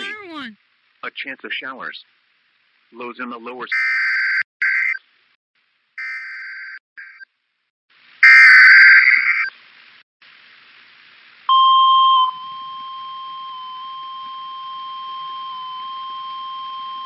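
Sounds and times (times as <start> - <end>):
faint hiss: 9.6 - 11.5.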